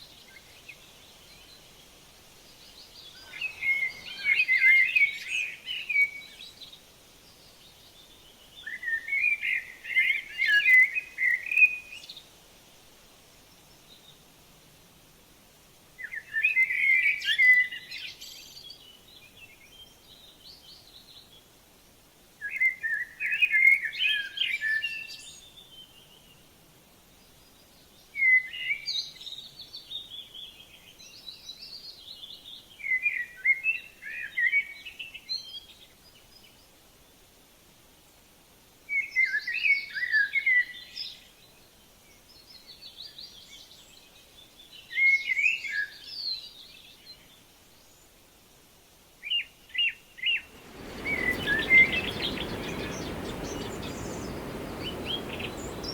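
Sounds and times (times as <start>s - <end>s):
songbird warbling: 50.2s - 55.9s.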